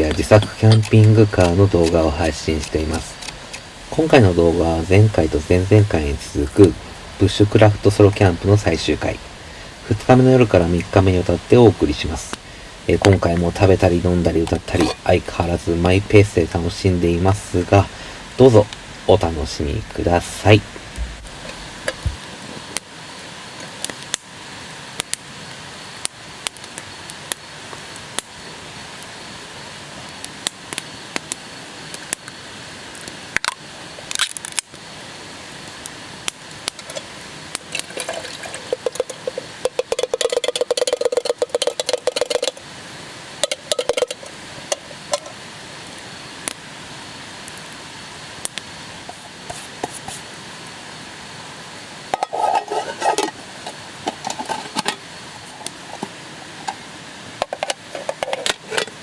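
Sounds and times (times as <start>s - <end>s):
sharp clicks and crackles: 0.0s - 2.0s, 2.6s - 3.7s, 33.4s - 34.8s, 36.6s - 42.7s, 43.4s - 45.4s
metal pot scraping and clinking: 0.0s - 3.7s, 14.4s - 15.2s, 36.8s - 37.1s, 37.7s - 42.6s, 43.4s - 45.4s, 52.1s - 56.8s, 57.4s - 59.0s
steady hiss: 0.0s - 59.0s.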